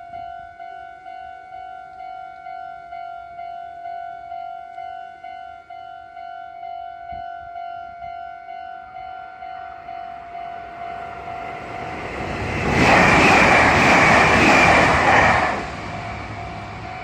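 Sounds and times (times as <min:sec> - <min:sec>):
railroad crossing bell: 0:00.0 - 0:17.0
electric train rushing past: 0:09.4 - 0:17.0.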